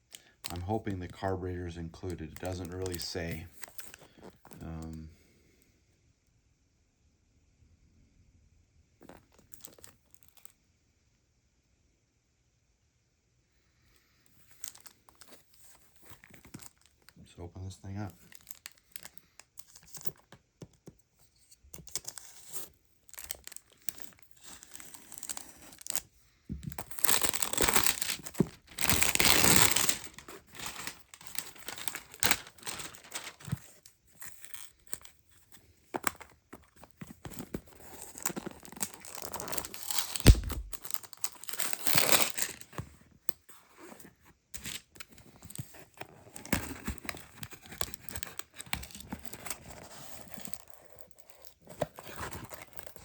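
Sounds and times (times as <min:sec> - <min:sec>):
packaging tearing and crinkling: 0:02.3 - 0:04.9, 0:09.0 - 0:10.5, 0:14.5 - 0:16.9, 0:18.0 - 0:20.3, 0:21.7 - 0:43.4, 0:44.6 - 0:53.0
dull thump: 0:40.2 - 0:40.8.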